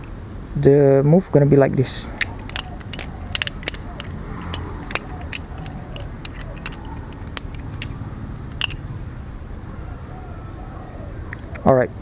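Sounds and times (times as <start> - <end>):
butterfly knife clicking: 2.2 - 8.8.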